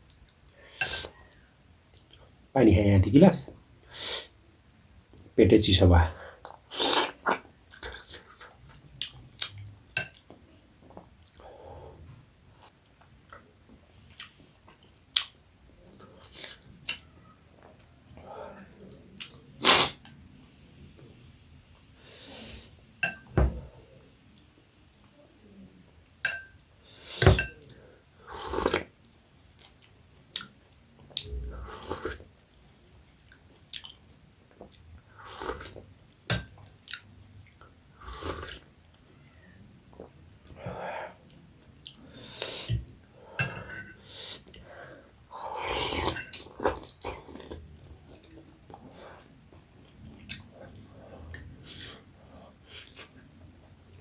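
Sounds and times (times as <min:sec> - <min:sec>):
person chewing food: 0:12.6 - 0:19.5, 0:33.2 - 0:35.8, 0:36.6 - 0:39.0, 0:45.4 - 0:53.7.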